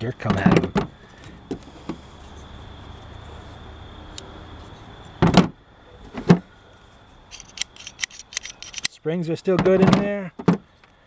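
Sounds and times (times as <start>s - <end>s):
faint steady hum: 0.0s - 9.6s.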